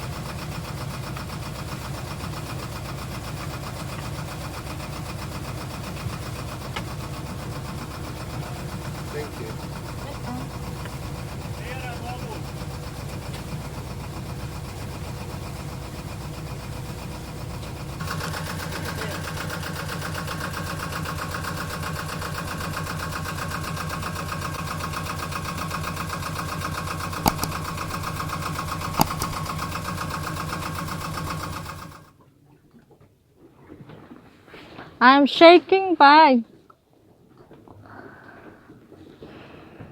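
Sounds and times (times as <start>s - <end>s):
boat engine running: 0.0s - 32.2s
sharp clicks: 27.0s - 29.9s.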